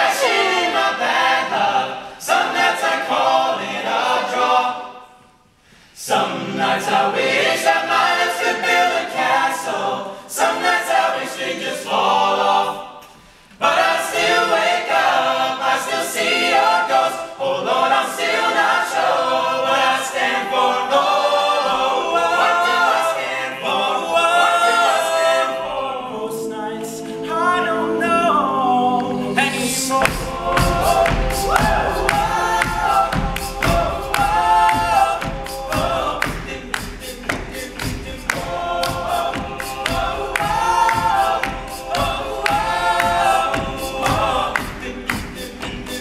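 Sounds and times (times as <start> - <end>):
male a cappella harmony singing: 0.0 - 5.2, 6.0 - 46.0
vocal percussion beat: 23.7 - 46.0.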